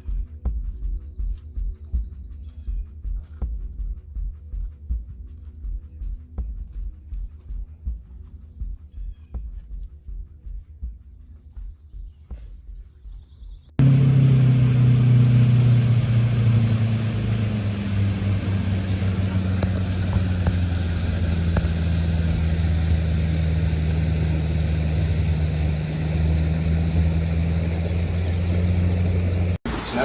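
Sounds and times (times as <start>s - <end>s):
boat engine droning: 13.8s - 30.0s.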